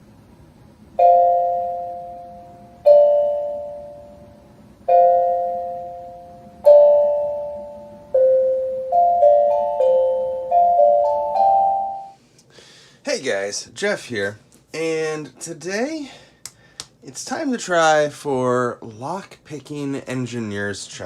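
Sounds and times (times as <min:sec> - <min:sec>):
chiming keyboard chords: 0:01.0 - 0:12.2.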